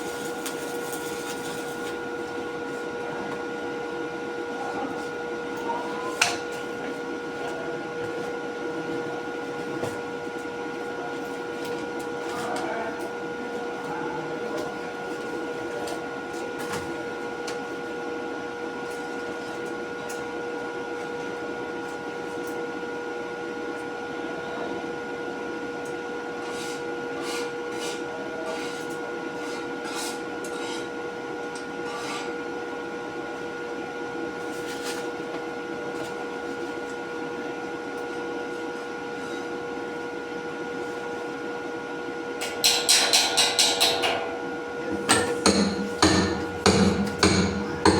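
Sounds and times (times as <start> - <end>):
machine hum: 43.8 - 47.9.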